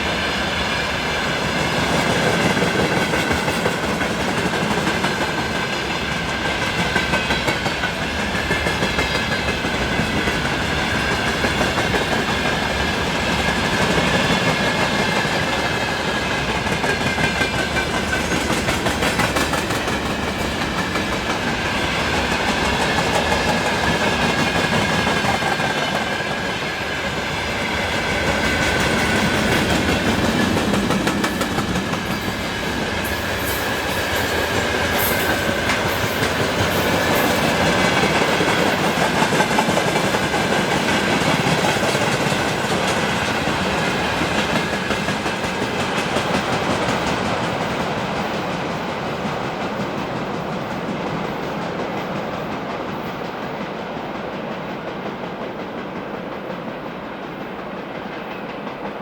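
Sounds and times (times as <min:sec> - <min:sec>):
train wheels clattering over joints: 0:01.6 - 0:59.0.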